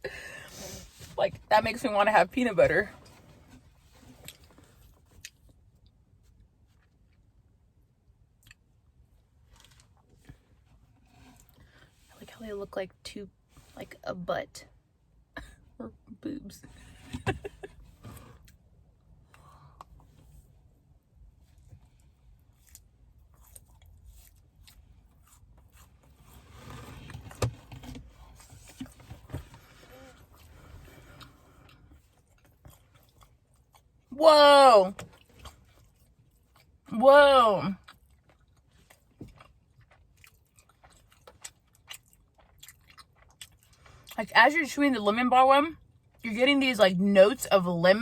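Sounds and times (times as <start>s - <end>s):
person chewing soft food: 4.1s - 7.5s, 8.1s - 12.0s, 21.2s - 34.1s, 35.0s - 36.9s, 37.8s - 44.2s.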